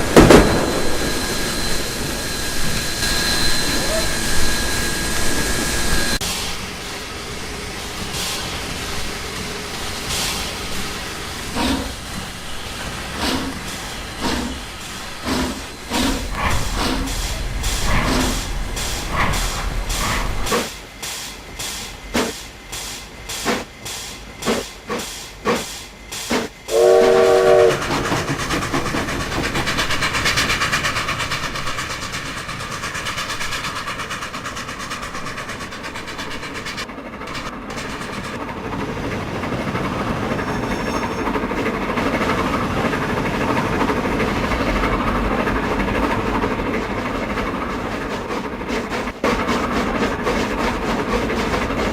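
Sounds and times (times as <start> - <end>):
steam locomotive exhaust chuffs: 0.0 - 51.9
train rumbling on rails: 0.0 - 51.9
steam whistle blast: 26.7 - 27.9.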